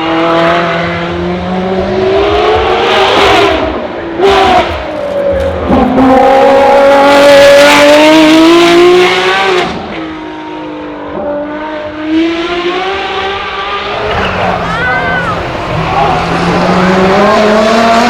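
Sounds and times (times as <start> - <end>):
car engine accelerating hard: 13.8 - 18.0.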